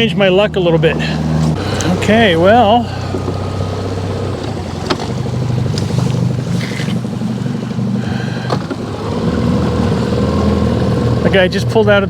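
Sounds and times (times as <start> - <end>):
boat motor running: 0.0 - 12.0.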